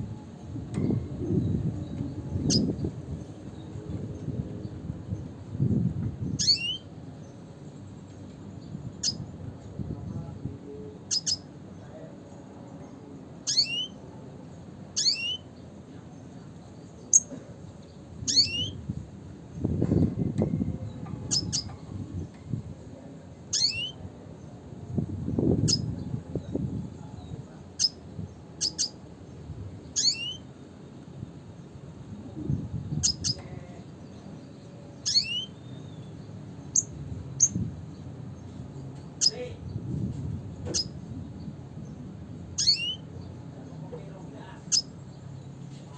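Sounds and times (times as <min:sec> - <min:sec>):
bird calling sharp high notes: 0:30.0 - 0:30.4.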